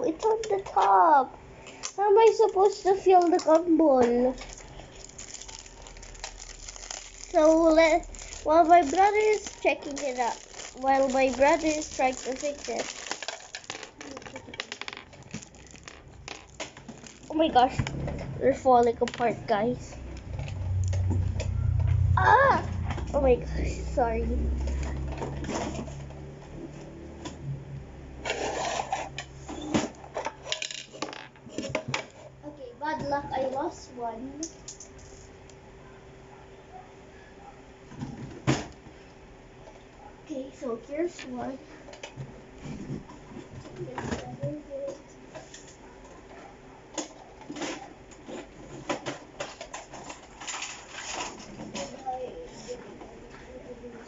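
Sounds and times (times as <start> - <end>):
plastic toy parts rustling: 1.8 - 19.4, 47.5 - 52.7
plastic pieces clicking together: 4.4 - 17.7.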